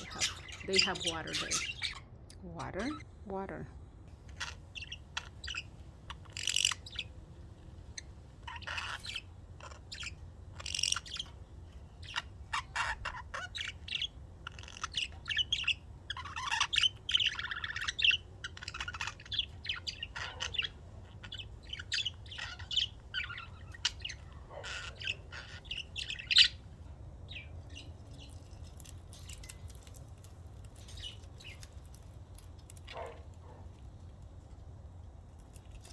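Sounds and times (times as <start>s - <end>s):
budgerigars chirping: 0.0s - 2.0s, 4.3s - 26.7s.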